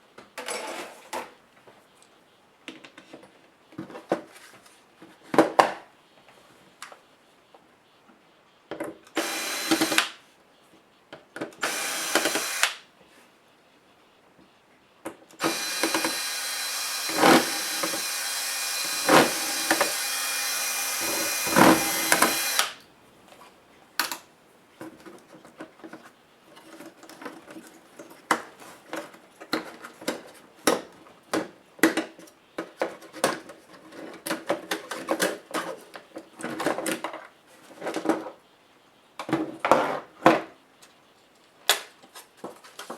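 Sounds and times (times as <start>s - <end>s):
electric screwdriver whining: 9.2s - 10.2s, 11.6s - 12.8s, 15.4s - 22.8s.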